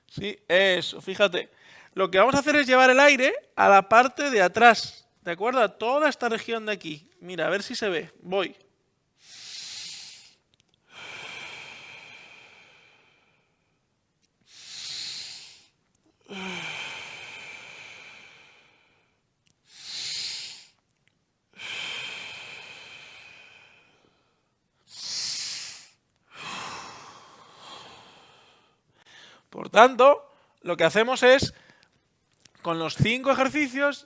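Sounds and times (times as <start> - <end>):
person breathing deeply: 9.2 - 13.8, 14.4 - 20.8, 21.5 - 29.5.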